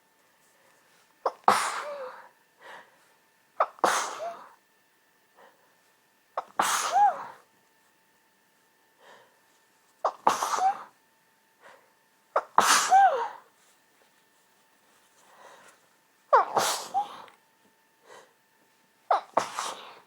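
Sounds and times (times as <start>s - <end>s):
person sneezing: 1.2s - 2.3s, 3.6s - 4.6s, 6.4s - 7.4s, 10.0s - 11.0s, 12.3s - 13.5s, 16.3s - 17.3s, 19.1s - 20.0s
person breathing: 2.6s - 3.2s, 9.0s - 9.4s, 11.6s - 12.0s, 15.1s - 15.8s, 18.0s - 18.4s.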